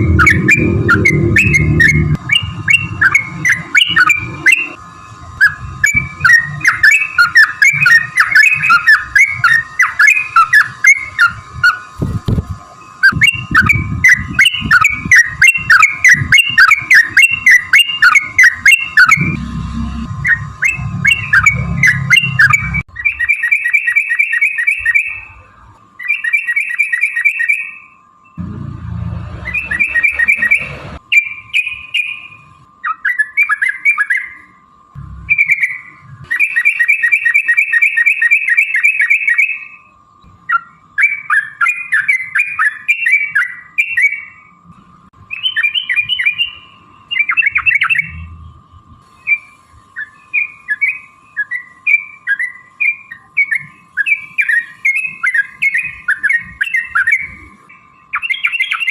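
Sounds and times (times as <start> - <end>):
low rumble: 0.0 - 6.3, 19.2 - 22.9, 28.4 - 31.0, 35.0 - 35.4
bulbuls calling in rolling chatter: 0.0 - 44.6.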